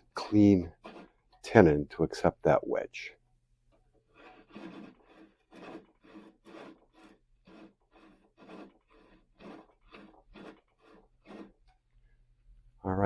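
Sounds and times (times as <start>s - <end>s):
saw cutting wood: 0.0s - 1.8s, 4.1s - 11.7s.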